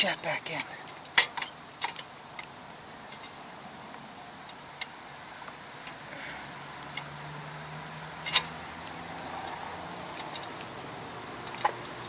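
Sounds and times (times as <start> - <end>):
rain hiss: 0.0 - 12.0
metallic clicks of tools: 8.2 - 10.7.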